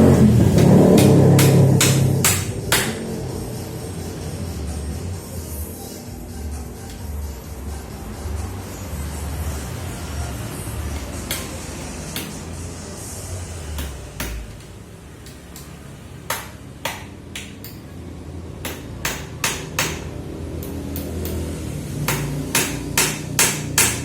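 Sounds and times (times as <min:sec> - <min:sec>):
hammer striking nails into wood: 0:00.6 - 0:03.0, 0:18.6 - 0:21.4, 0:22.1 - 0:24.0.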